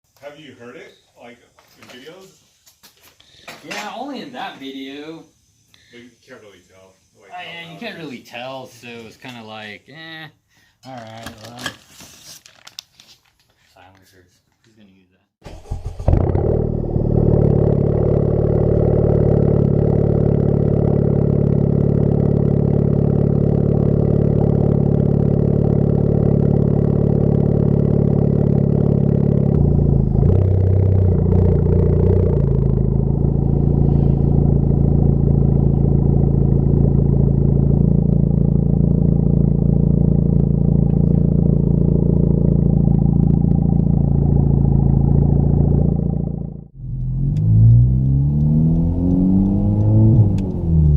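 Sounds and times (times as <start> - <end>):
car exhaust drone: 15.6 - 50.9.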